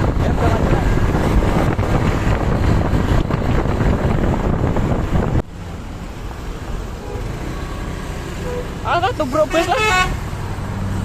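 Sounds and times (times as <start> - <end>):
wind buffeting microphone: 0.0 - 6.9
road traffic noise: 0.0 - 11.0.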